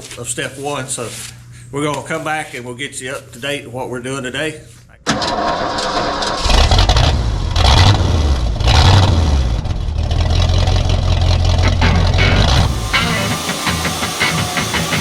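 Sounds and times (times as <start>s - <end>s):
engine running under varying load: 6.4s - 15.0s.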